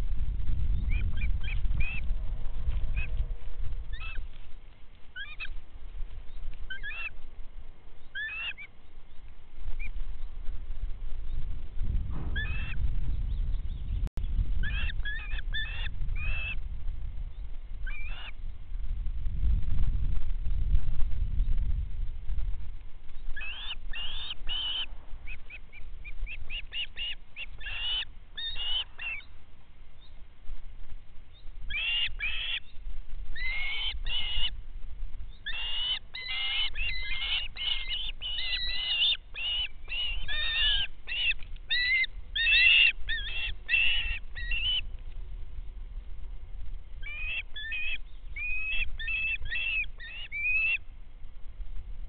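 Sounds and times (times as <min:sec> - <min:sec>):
steady low rumble: 0:00.0 - 0:52.0
birds calling: 0:03.8 - 0:05.6, 0:06.2 - 0:07.2, 0:07.9 - 0:10.4, 0:12.3 - 0:16.6, 0:17.3 - 0:18.4, 0:23.2 - 0:29.4, 0:31.3 - 0:34.6, 0:35.3 - 0:44.9, 0:47.0 - 0:50.9.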